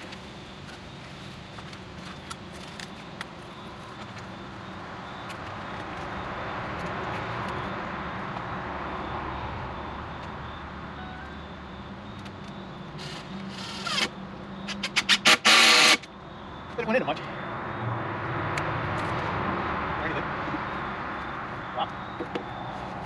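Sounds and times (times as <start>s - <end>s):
passing vehicle rumble: 16.5s - 23.0s.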